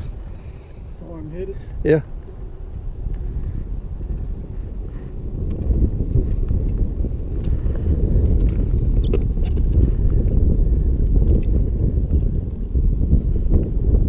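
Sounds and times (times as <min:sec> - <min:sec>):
strong wind buffeting microphone: 0:00.0 - 0:14.0.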